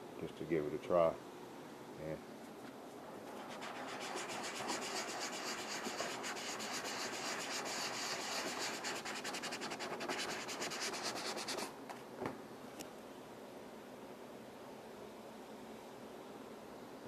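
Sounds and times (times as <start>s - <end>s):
sanding pad rubbing paint: 3.3s - 11.7s.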